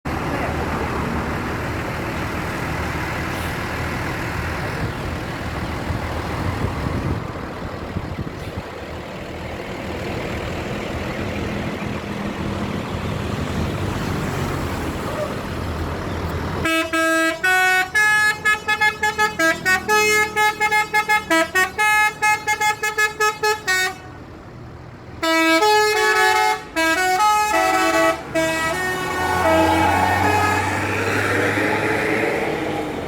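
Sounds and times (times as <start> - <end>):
engine low hum: 0.1 - 18.0
bus horn playing melody: 16.6 - 24.3, 25.2 - 31.2.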